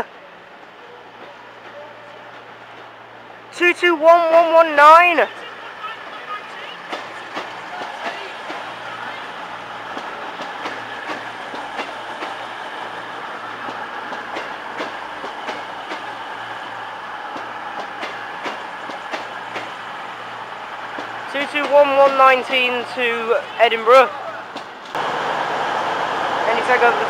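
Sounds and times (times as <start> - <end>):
diesel train engines running: 0.0 - 27.0
train wheels clicking over rail joints: 5.4 - 23.2, 24.4 - 25.1.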